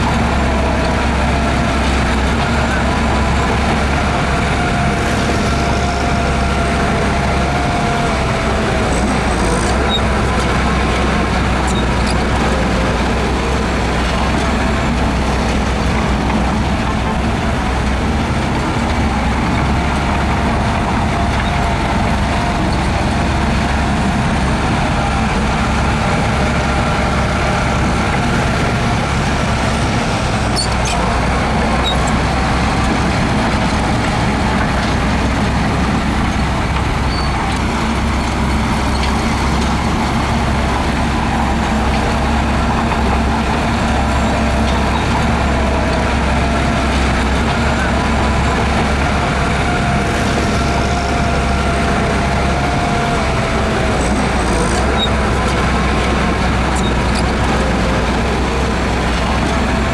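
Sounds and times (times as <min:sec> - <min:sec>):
heavy diesel machinery rumbling: 0:00.0 - 0:59.9.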